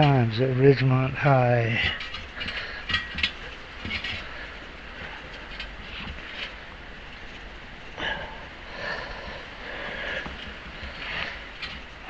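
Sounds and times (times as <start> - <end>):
person breathing: 8.0 - 11.6.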